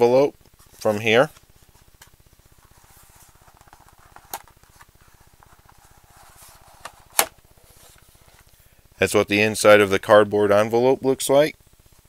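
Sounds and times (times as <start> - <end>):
cardboard rustling and scraping: 0.6 - 8.5.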